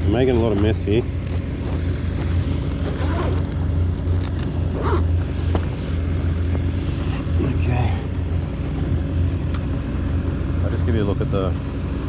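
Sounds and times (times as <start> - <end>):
low engine drone: 0.0 - 12.0.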